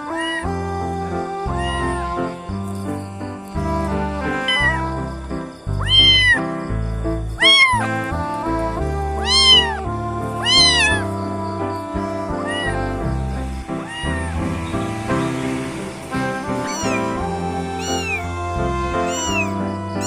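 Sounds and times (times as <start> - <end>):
cat meowing: 0.0 - 0.5, 1.2 - 5.0, 5.8 - 6.5, 7.4 - 7.9, 9.2 - 11.1, 11.9 - 14.5, 16.1 - 20.0
background music: 0.0 - 20.0.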